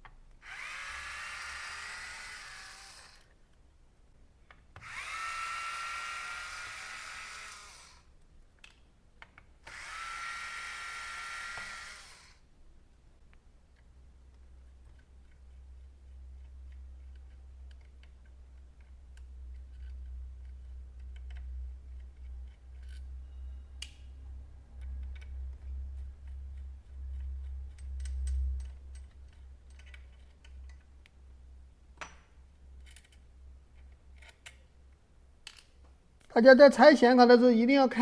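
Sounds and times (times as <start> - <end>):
screwdriver clicks and taps: 16.4 - 23.0, 33.8 - 34.6.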